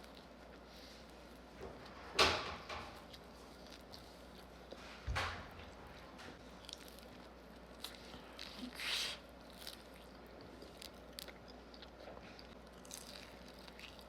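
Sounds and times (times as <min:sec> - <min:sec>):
close chewing with crunches: 0:00.0 - 0:01.5, 0:03.0 - 0:04.9, 0:06.4 - 0:14.0.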